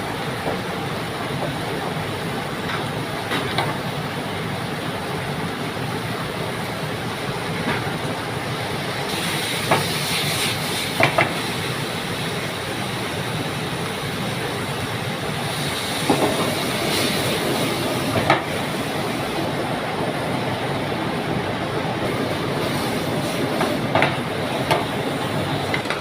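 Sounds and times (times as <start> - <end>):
food sizzling in a pan: 9.1 - 12.4, 15.4 - 19.0.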